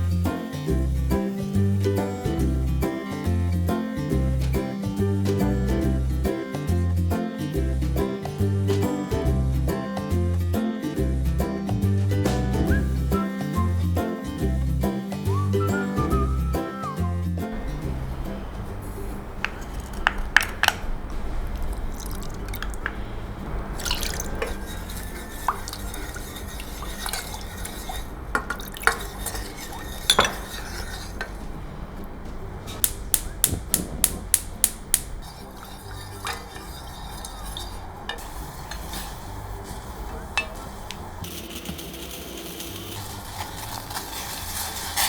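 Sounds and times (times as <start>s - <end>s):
utensils and dishes clinking: 23.7s - 31.5s, 32.7s - 45.0s.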